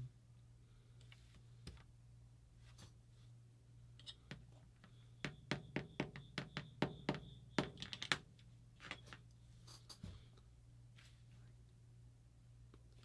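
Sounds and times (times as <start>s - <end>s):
faint ringing tone: 4.0s - 8.1s.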